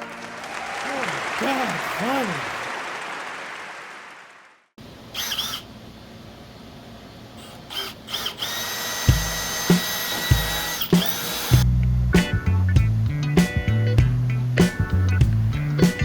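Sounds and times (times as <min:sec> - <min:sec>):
power tool whining: 0:05.1 - 0:05.7, 0:07.7 - 0:11.6
music with heavy bass beat: 0:11.6 - 0:16.0.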